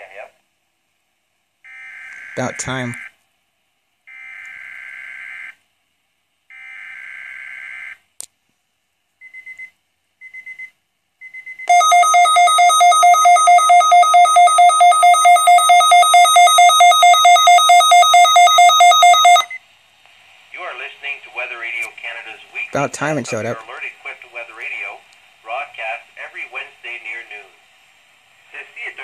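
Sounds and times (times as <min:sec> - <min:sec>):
short beeps: 0:09.2 - 0:19.6
pulsing alert siren: 0:11.7 - 0:19.5.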